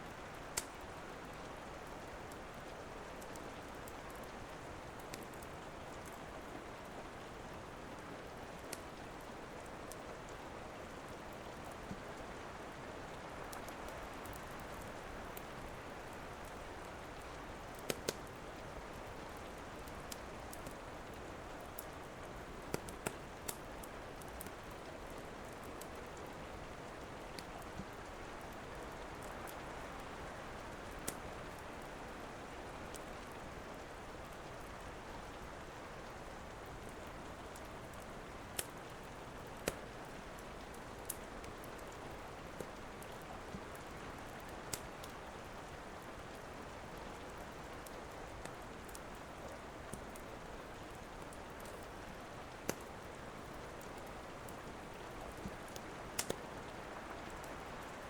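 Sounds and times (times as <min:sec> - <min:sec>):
steady rain: 0:00.0 - 0:58.0
wood fire crackling and popping: 0:00.4 - 0:00.9, 0:04.9 - 0:06.2, 0:13.4 - 0:26.0, 0:29.1 - 0:32.0, 0:36.5 - 0:46.0, 0:46.9 - 0:58.0.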